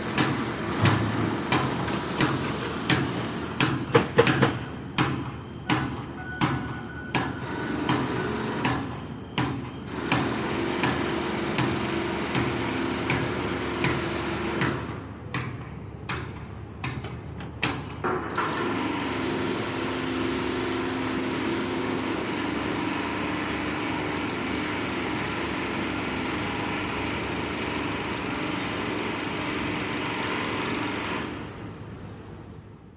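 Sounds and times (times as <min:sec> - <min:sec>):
motorised machine running: 0:07.2 - 0:15.0, 0:18.3 - 0:31.6
steady motor drone: 0:18.3 - 0:31.9.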